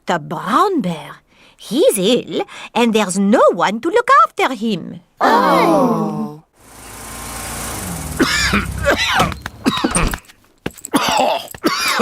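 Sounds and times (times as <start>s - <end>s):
rising hiss: 6.6s - 10.0s
cartoon bear coughing: 8.2s - 10.1s, 10.9s - 12.0s.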